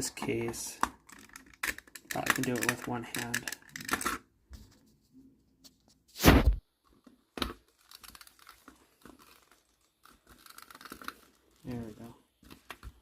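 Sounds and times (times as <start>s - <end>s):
plastic clicks and scrapes: 0.1s - 4.3s.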